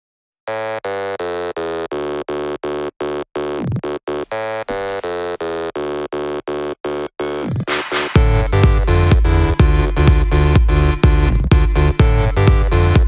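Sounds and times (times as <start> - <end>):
stuttering buzzy synth chord: 0.5 - 13.0.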